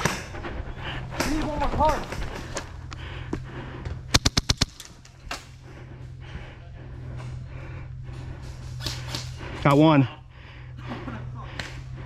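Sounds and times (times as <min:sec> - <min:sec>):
steady low hum: 0:00.0 - 0:12.0
airsoft gun shots: 0:04.1 - 0:04.9.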